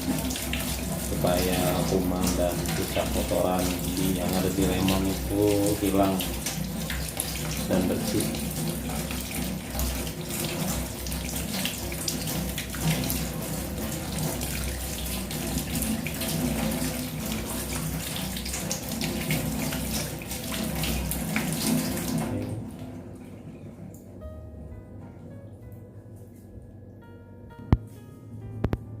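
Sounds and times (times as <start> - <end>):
water splashing over lemon: 0.0 - 22.8
kitchen tap running: 0.0 - 24.2.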